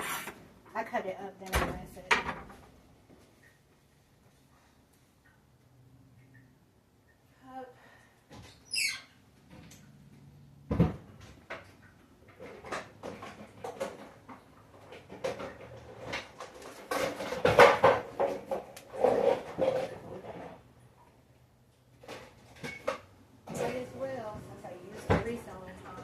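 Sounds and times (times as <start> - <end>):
objects knocking and clattering: 1.6 - 2.8, 10.7 - 20.6.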